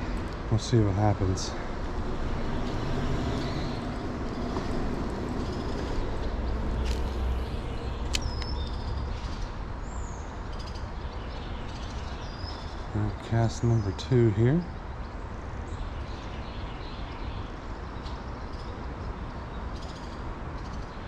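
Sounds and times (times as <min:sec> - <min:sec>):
vehicle rumbling overhead: 0:00.0 - 0:20.6
bird chirps: 0:02.3 - 0:14.8.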